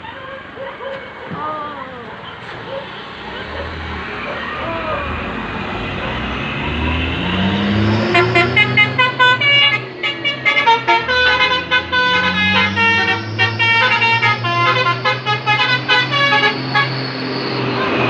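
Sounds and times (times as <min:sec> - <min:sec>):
truck engine humming: 0:00.0 - 0:18.0
musical truck horn tune: 0:08.1 - 0:18.0.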